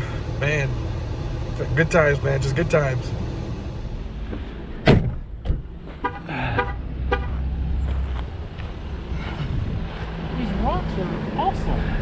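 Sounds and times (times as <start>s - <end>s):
engine running low rumble: 0.0s - 12.0s.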